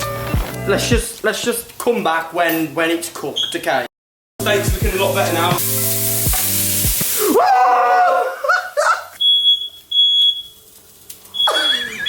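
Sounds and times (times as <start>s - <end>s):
steak sizzling in a frying pan: 4.6s - 7.4s
smoke alarm beeping: 9.2s - 10.7s, 11.3s - 12.0s
voices crying out: 11.4s - 12.0s.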